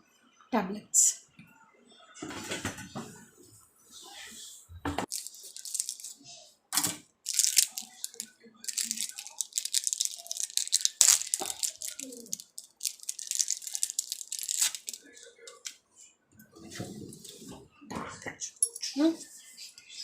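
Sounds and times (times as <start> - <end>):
plastic wrapper crinkling and tearing: 5.1 - 6.2, 6.8 - 15.7.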